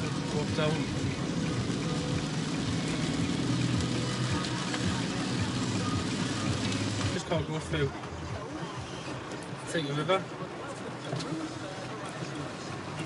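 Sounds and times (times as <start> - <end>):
car engine humming: 0.0 - 13.0
heavy rain on a car: 0.0 - 13.0.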